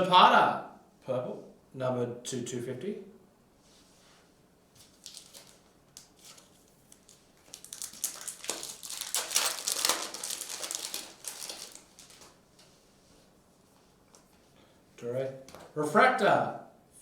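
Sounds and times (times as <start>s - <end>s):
foil wrapper tearing and crinkling: 4.8s - 12.4s.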